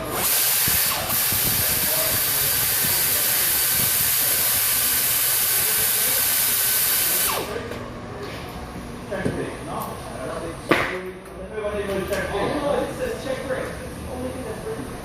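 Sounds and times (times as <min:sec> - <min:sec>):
hissing jet from a nozzle: 0:00.2 - 0:07.6.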